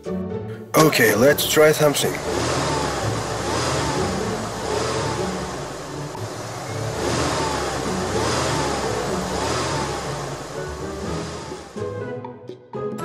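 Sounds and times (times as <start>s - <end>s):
car engine revving: 0.8s - 11.8s.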